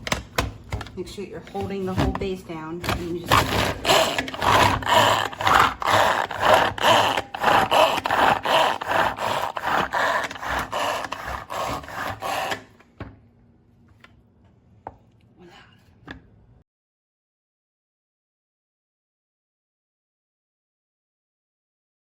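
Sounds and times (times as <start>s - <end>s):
pull-cord food chopper whirring: 2.8s - 12.8s.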